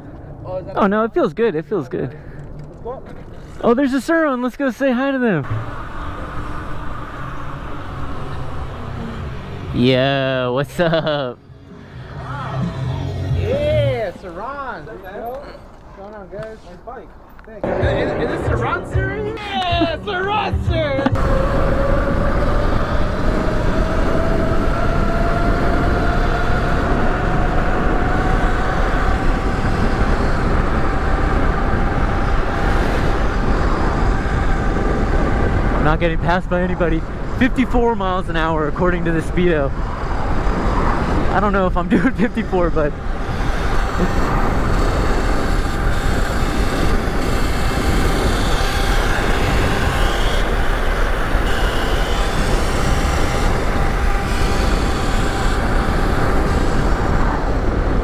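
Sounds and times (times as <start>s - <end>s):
wind and road noise: 0.0s - 58.0s
faint electric motor whine: 42.9s - 58.0s.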